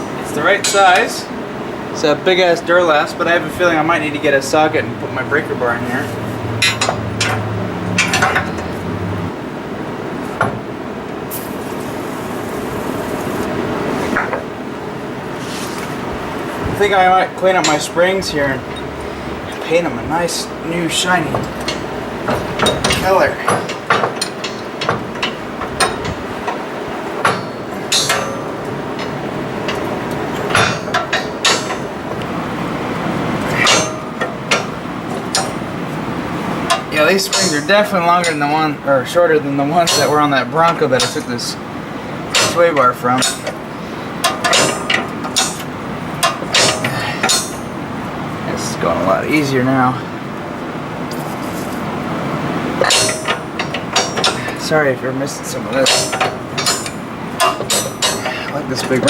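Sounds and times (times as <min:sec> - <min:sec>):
metallic clanks and knocks: 0:06.6 - 0:09.2, 0:21.0 - 0:26.6, 0:27.2 - 0:32.3, 0:33.4 - 0:35.7, 0:36.6 - 0:38.6, 0:39.8 - 0:41.5, 0:42.3 - 0:47.8, 0:52.8 - 0:54.6, 0:55.7 - 0:59.0
background hiss: 0:11.2 - 0:14.2
wrench clinking on metal: 0:27.2 - 0:29.8, 0:44.2 - 0:47.6, 0:52.8 - 0:54.6, 0:55.7 - 0:59.0.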